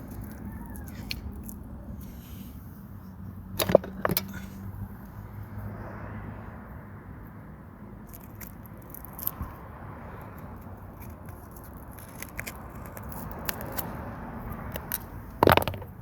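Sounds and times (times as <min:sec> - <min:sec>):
hard tools clacking together: 0:03.6 - 0:04.5.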